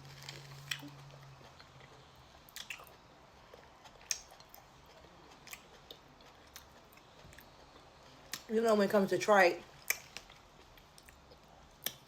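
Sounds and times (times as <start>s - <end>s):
person chewing food: 0.0s - 8.5s, 9.7s - 12.0s
wet mouth clicks: 2.5s - 2.9s.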